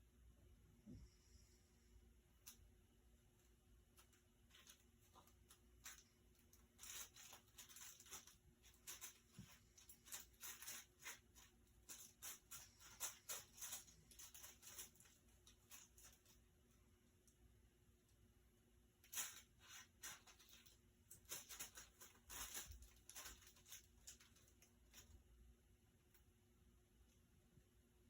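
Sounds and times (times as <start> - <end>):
rustling and crackling clicks: 3.3 - 17.4, 19.0 - 25.4.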